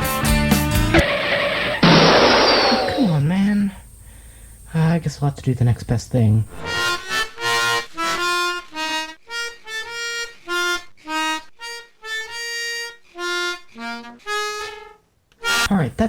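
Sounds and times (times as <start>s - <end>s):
harmonica playing a tune: 6.5s - 16.0s.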